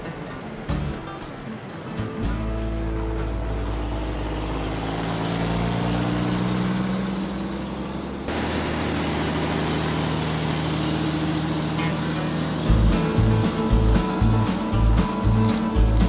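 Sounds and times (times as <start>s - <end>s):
engine running: 0.0s - 16.0s.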